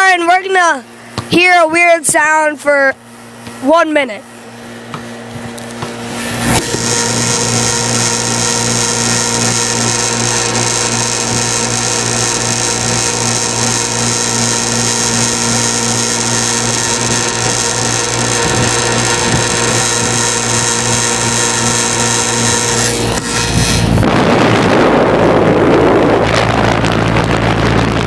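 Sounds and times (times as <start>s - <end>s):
small motor humming and whirring: 3.0s - 24.1s.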